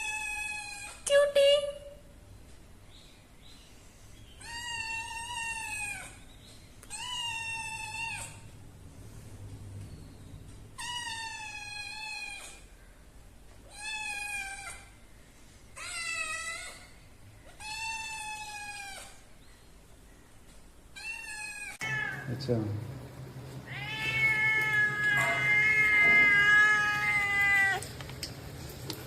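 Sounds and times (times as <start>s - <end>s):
cat meowing: 4.4s - 6.2s, 6.9s - 8.5s, 13.6s - 14.9s, 21.0s - 22.3s, 23.7s - 27.8s.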